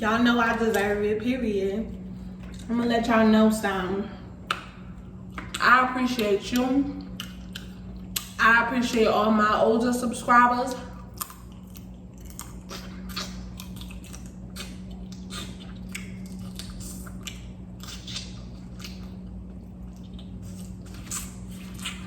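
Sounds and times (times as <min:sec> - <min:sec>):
steady low hum: 0:00.0 - 0:22.0
person chewing with mouth clicks: 0:04.4 - 0:05.6, 0:06.9 - 0:08.4, 0:10.8 - 0:22.0.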